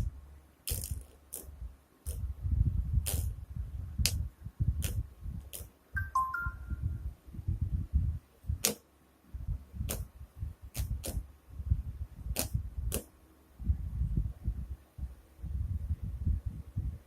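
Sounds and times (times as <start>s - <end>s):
fan air buffeting microphone: 0.0s - 17.0s
falling pitch beep: 6.0s - 6.9s.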